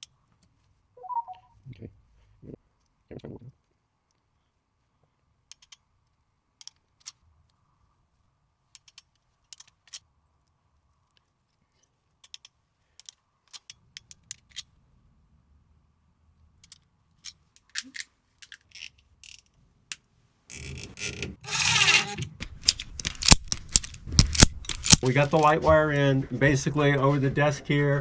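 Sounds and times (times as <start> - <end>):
clicks and taps of wire handling: 8.8 - 14.7
rustling and scraping handling noise: 20.5 - 25.8.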